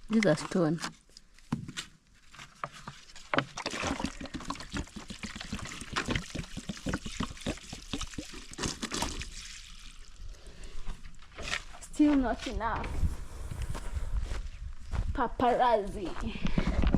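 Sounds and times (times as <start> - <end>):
water splashing onto soil: 3.6 - 10.2.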